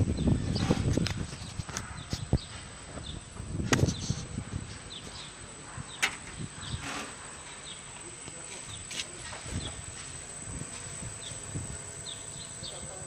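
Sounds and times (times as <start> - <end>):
small bird chirping: 8.6 - 13.0.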